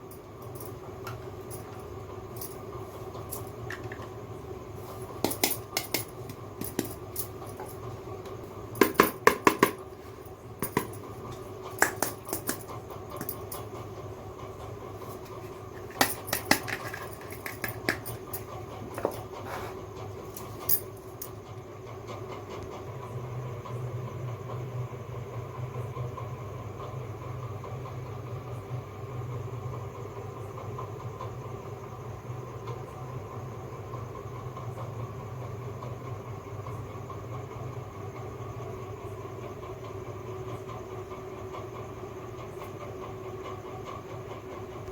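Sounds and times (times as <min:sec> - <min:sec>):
plastic toy pieces clattering: 0:15.9 - 0:18.1.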